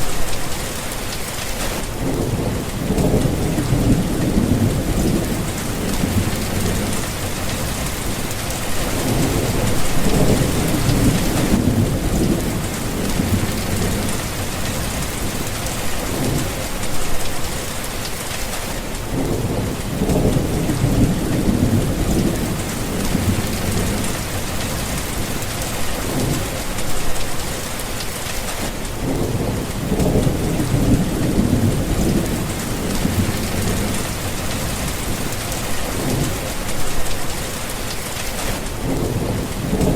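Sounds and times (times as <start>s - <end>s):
heavy rain falling: 0.0s - 39.9s
rolling thunder: 1.8s - 17.3s, 19.1s - 27.5s, 28.9s - 37.5s, 38.5s - 39.9s.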